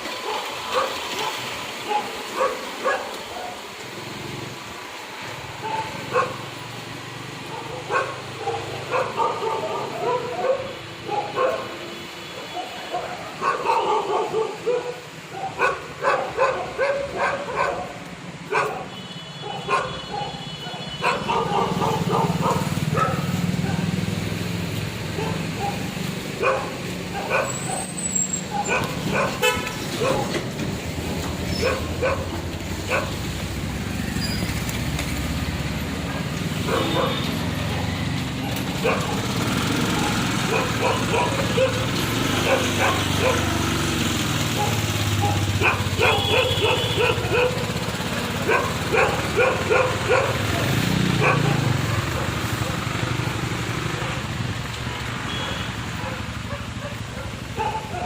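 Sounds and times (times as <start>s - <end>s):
dog barking: 0.2s - 3.7s, 5.6s - 6.6s, 7.4s - 11.8s, 12.4s - 24.0s, 25.1s - 30.4s, 31.5s - 33.2s, 36.0s - 43.6s, 44.4s - 52.8s, 53.8s - 54.5s, 55.3s - 58.0s
engine running: 21.0s - 58.0s
people calling: 44.8s - 47.9s
car horn toot: 46.0s - 47.2s, 55.3s - 55.8s.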